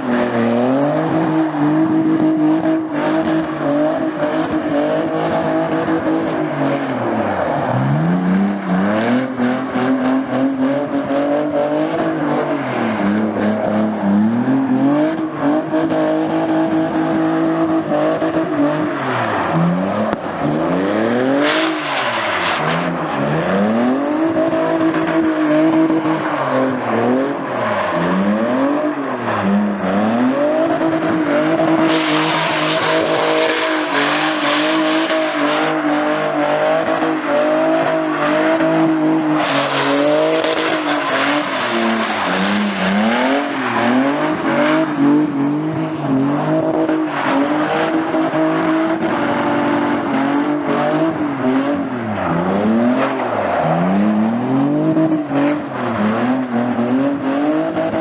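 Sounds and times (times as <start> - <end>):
car engine revving hard: 0.0 - 58.0
tyre squeal: 21.3 - 23.0, 31.6 - 36.1, 39.2 - 45.1.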